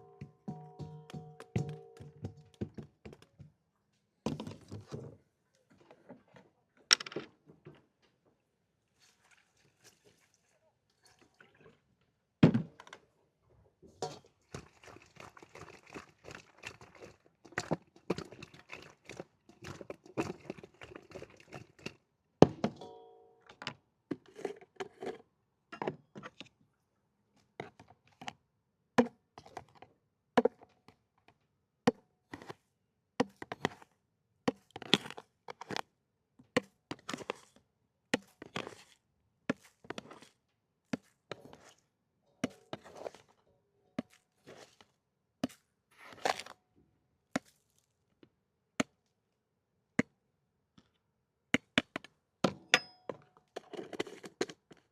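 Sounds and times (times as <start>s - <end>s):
knife chopping and utensils knocking: 0.0s - 2.9s
rustling mixing noise: 13.9s - 22.0s, 38.2s - 43.4s, 44.0s - 46.5s.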